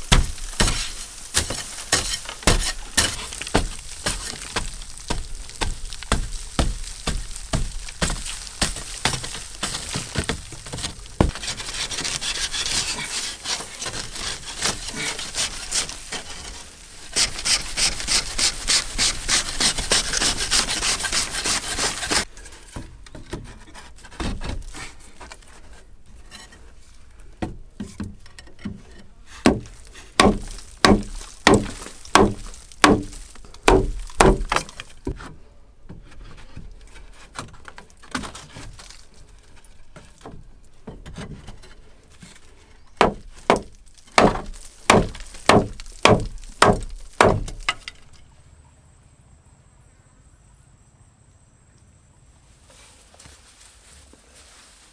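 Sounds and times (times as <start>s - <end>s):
hand saw sawing strokes: 0.0s - 22.7s
scraping and rubbing wood: 0.0s - 48.2s
sharp knocks: 29.4s - 34.7s, 43.0s - 47.8s.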